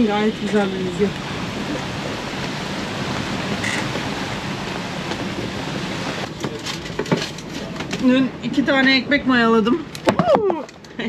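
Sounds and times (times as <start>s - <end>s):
wind rushing: 0.0s - 6.4s
sea rushing: 0.0s - 7.9s.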